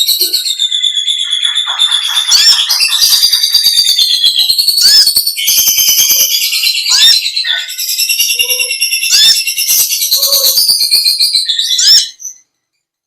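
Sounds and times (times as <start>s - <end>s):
bird singing chattering trills: 0.0s - 12.4s.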